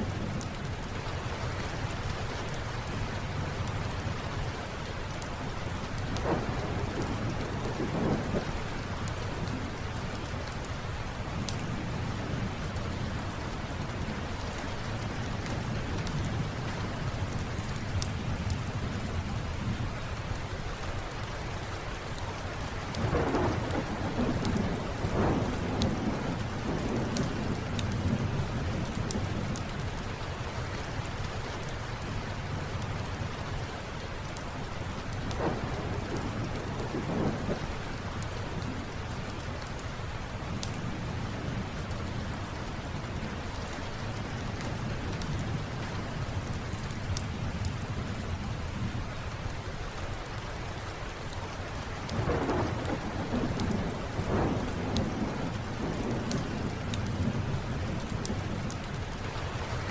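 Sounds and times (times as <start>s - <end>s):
steady rain: 0.0s - 59.9s
thunder rolling: 6.2s - 9.5s, 23.0s - 29.4s, 35.3s - 37.7s, 52.1s - 59.9s
wood fire crackling: 51.1s - 59.9s.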